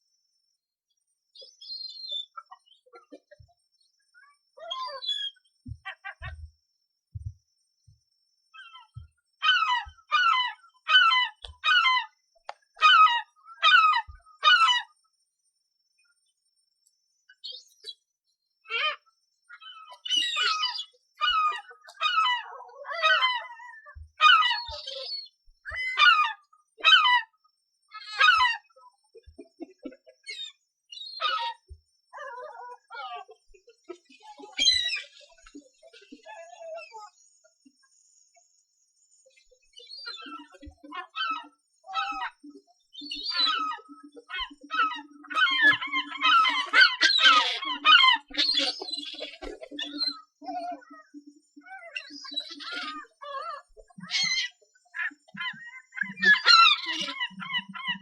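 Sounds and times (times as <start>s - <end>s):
gull calling: 19.6s - 27.3s, 29.4s - 33.4s, 40.0s - 58.0s.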